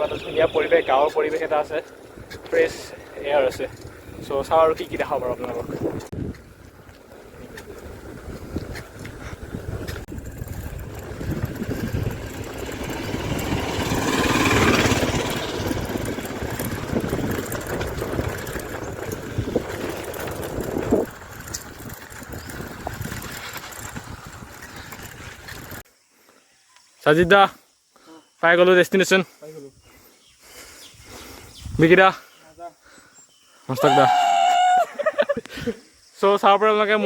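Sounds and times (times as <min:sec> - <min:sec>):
wind and road noise: 0:00.0 - 0:25.9, 0:29.4 - 0:33.2
motor vehicle passing: 0:06.6 - 0:25.8.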